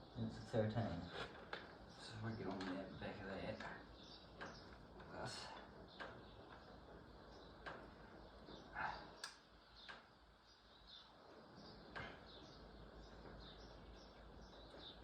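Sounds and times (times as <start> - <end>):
faint bird chirps: 0.0 - 15.0
light clicks: 9.2 - 10.1.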